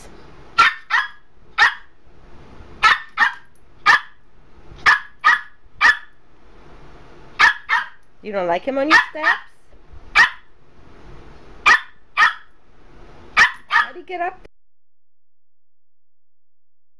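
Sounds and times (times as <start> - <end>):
dog barking sharply: 0.6 - 1.9, 2.8 - 4.2, 4.8 - 6.2, 7.4 - 8.0, 8.9 - 9.5, 10.2 - 10.5, 11.6 - 12.5, 13.4 - 14.0.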